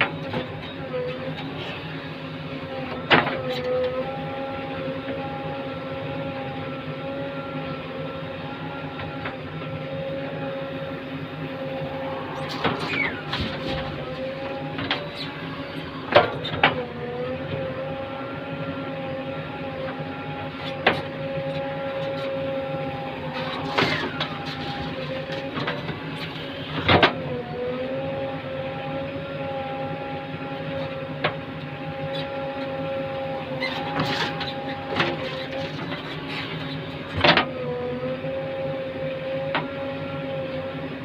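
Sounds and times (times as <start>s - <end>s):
backhoe loader engine whining: 0.0s - 41.0s.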